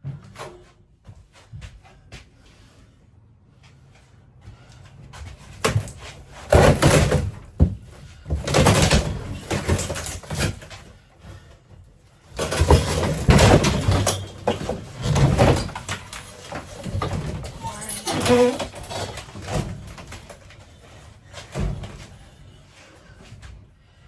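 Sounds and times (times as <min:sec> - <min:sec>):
scraping clatter of panels: 0:12.3 - 0:22.4
bangs and knocks: 0:12.4 - 0:20.0.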